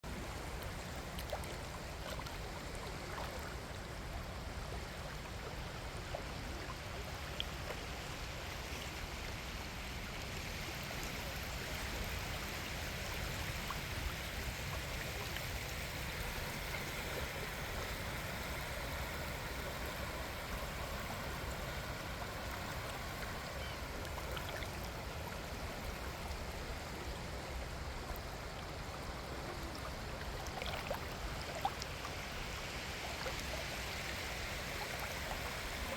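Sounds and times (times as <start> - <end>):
small waves washing on sand: 0.0 - 35.9.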